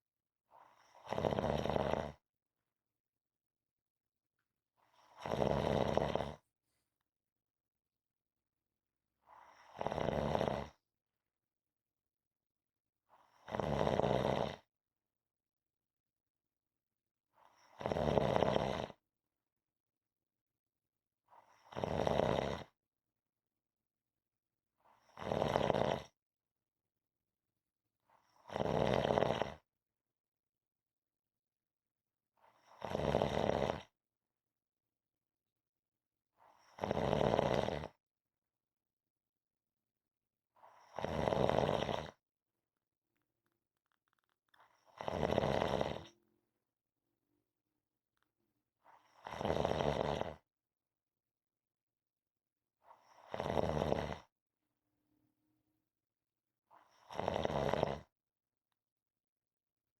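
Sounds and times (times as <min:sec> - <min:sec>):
person snoring: 0:00.6 - 0:02.2, 0:04.9 - 0:06.5, 0:09.2 - 0:10.8, 0:13.2 - 0:14.7, 0:17.5 - 0:19.0, 0:21.4 - 0:22.7, 0:25.0 - 0:26.2, 0:28.3 - 0:29.7, 0:32.5 - 0:34.0, 0:36.5 - 0:38.0, 0:40.6 - 0:42.2, 0:44.7 - 0:46.2, 0:48.9 - 0:50.4, 0:52.9 - 0:54.3, 0:56.8 - 0:58.1.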